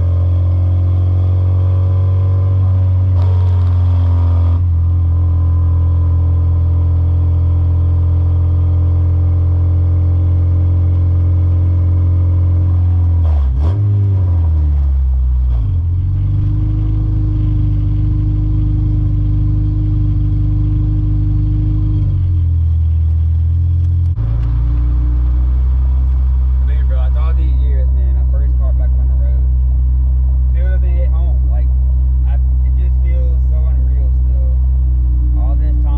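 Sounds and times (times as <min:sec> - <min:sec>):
car engine droning in cabin: 0:00.0 - 0:35.9.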